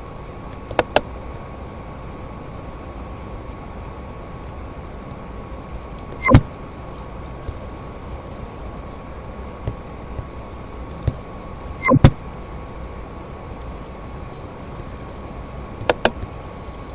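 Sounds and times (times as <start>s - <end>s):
steady hum and hiss: 0.0s - 16.9s
faint high steady tone: 6.2s - 6.6s, 10.4s - 16.9s.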